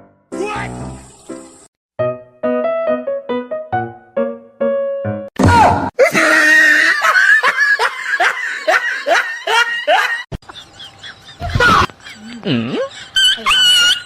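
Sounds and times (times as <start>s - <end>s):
person laughing hard: 6.0s - 14.0s.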